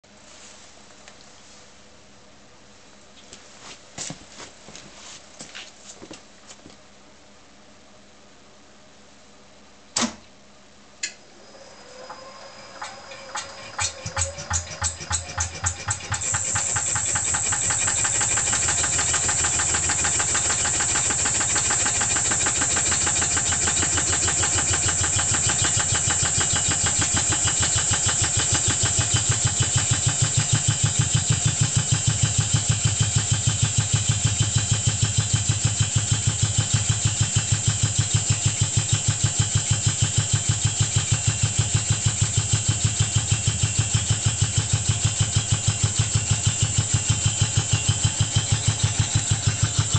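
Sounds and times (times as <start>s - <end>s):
piston air compressor running: 11.4s - 49.9s.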